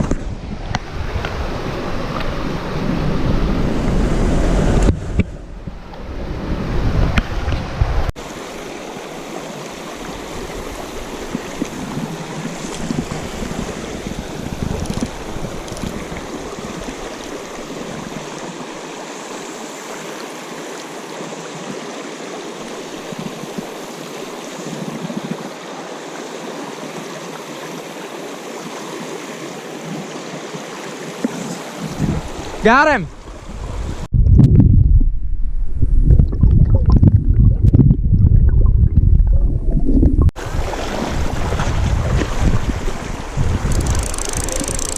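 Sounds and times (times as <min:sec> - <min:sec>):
wind rumble on microphone: 0:00.0 - 0:08.1, 0:10.0 - 0:17.1, 0:31.8 - 0:44.9
stream water rushing: 0:00.0 - 0:34.1, 0:40.3 - 0:44.9.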